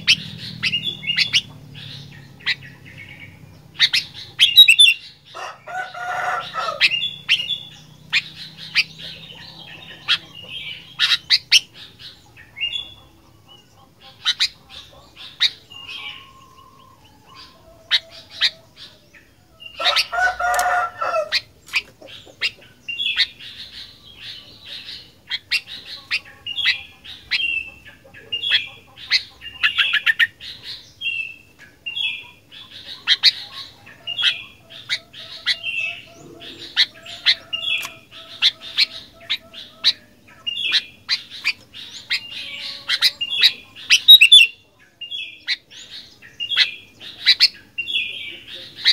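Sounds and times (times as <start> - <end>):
bird chirping and whistling: 0.0 - 5.2, 6.8 - 9.1, 34.1 - 44.6
harsh low bird calls: 0.0 - 48.9.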